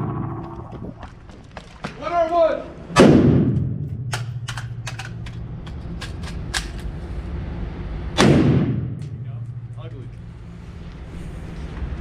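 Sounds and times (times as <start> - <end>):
rifle shot: 3.0 - 4.8, 8.2 - 9.1
sharp clicks and rattles: 4.1 - 6.9.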